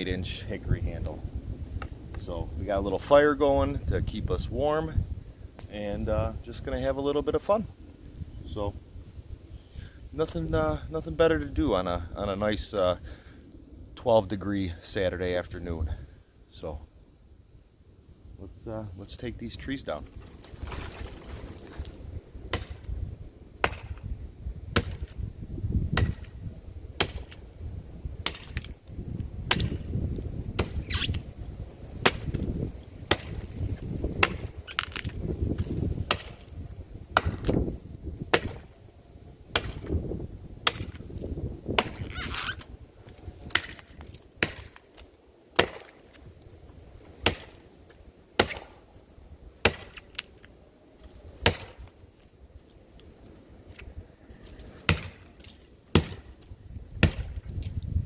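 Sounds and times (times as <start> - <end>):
axe chopping wood: 22.5 - 22.9, 23.6 - 24.1, 24.7 - 25.2, 25.9 - 26.4, 27.0 - 27.4, 28.2 - 28.7, 29.5 - 30.0, 30.6 - 30.8, 32.0 - 32.5, 33.1 - 33.5, 34.1 - 36.5, 37.1 - 37.6, 38.3 - 38.7, 39.5 - 40.0, 40.6 - 41.1, 41.7 - 42.0, 43.4 - 46.2, 47.2 - 47.6, 48.4 - 48.8, 49.6 - 50.3, 51.4 - 51.9, 54.8 - 56.4, 57.0 - 57.7.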